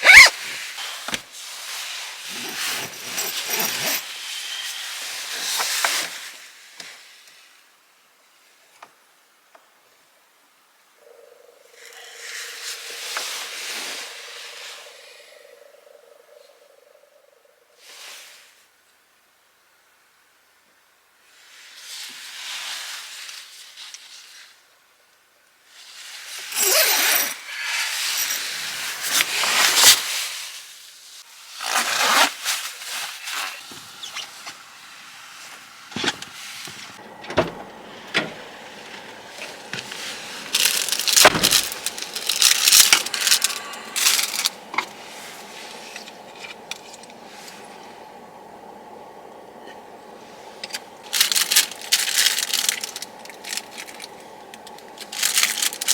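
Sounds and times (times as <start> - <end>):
rustling and scraping of objects: 0.0 - 7.0, 11.8 - 15.3, 25.9 - 30.5, 31.5 - 55.9
steady low hum: 33.7 - 55.9.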